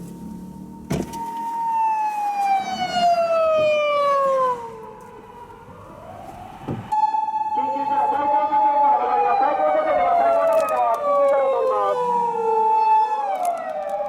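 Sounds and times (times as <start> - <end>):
car engine and road noise: 0.0 - 7.8
police siren wailing: 0.4 - 14.0.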